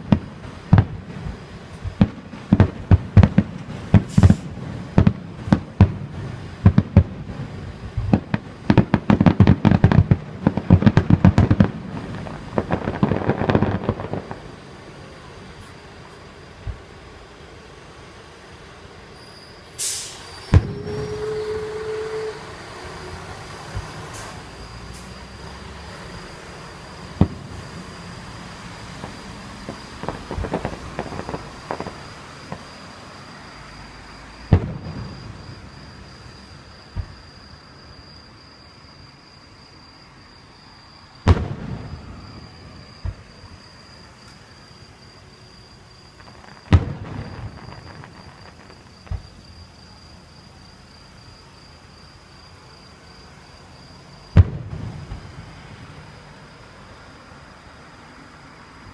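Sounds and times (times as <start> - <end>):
firework crackling pops: 0.0 - 17.0, 19.7 - 21.3, 23.3 - 25.2, 25.8 - 33.4, 34.4 - 36.0, 36.9 - 37.3, 41.2 - 44.6, 46.0 - 49.7, 54.3 - 55.9
fireworks booming: 0.0 - 37.5, 41.2 - 50.0, 54.2 - 56.3
crickets chirring: 0.0 - 58.9.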